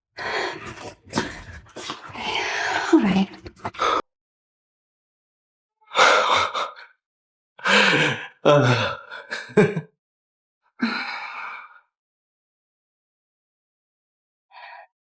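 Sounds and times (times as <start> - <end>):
person gasping and moaning: 7.6 - 9.2.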